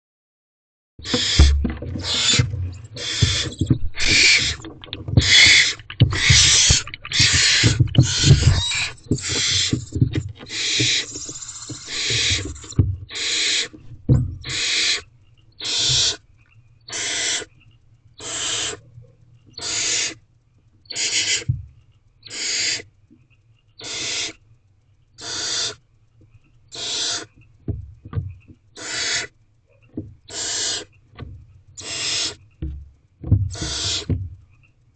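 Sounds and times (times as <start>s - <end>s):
low knocks and scuffles: 1.0s - 13.1s, 32.6s - 34.4s
owlets hissing: 1.0s - 13.7s.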